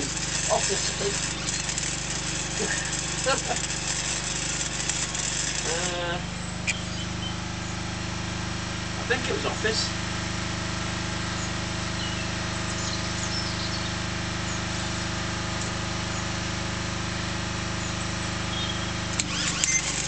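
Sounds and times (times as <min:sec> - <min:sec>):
engine idling: 0:00.0 - 0:20.0
faint bird chirps: 0:06.4 - 0:07.8, 0:11.2 - 0:14.7, 0:17.8 - 0:19.1.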